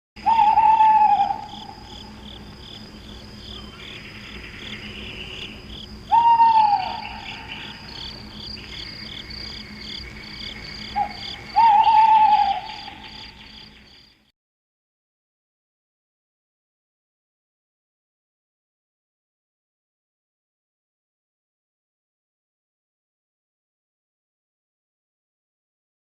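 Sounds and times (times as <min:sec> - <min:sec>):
owl calling: 0:00.2 - 0:02.3, 0:03.5 - 0:14.0
crickets chirping: 0:00.2 - 0:14.3.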